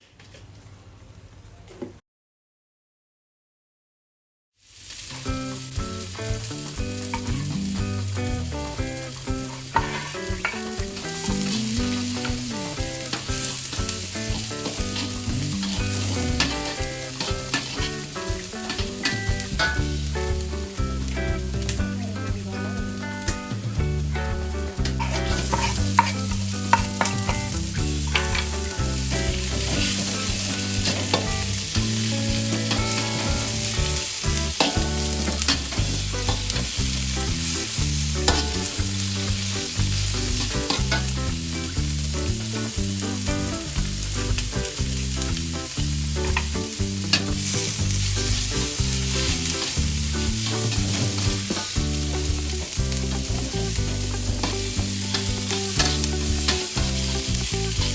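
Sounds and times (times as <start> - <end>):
food sizzling in oil: 4.6 - 57.9
utensil scraping pan: 25.0 - 27.4.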